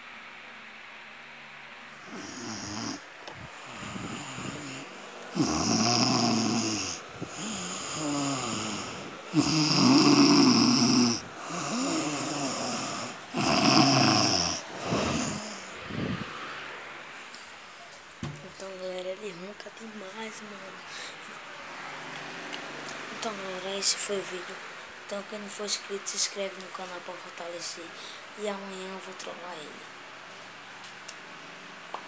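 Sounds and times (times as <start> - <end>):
man snoring loudly: 2.0 - 15.8.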